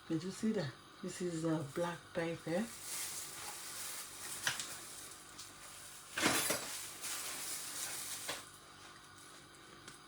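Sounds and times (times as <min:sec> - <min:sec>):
rustling and clinking: 0:06.1 - 0:08.5.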